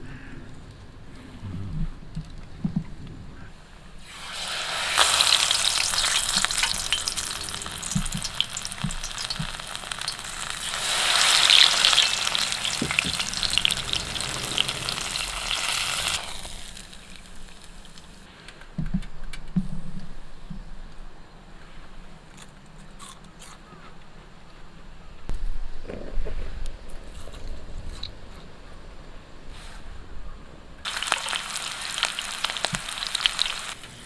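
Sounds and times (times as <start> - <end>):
food sizzling in a hot pan: 4.0 - 18.3, 30.9 - 34.0.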